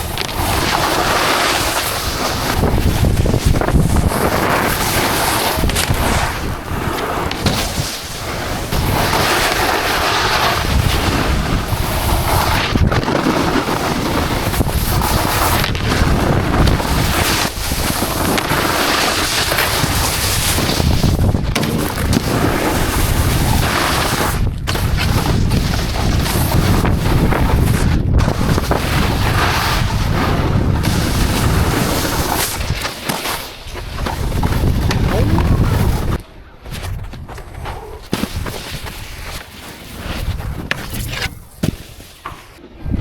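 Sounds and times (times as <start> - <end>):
snowboard scraping over snow: 0.0 - 43.0
wind buffeting microphone: 2.0 - 9.4, 19.7 - 32.8, 33.7 - 36.2, 42.6 - 43.0.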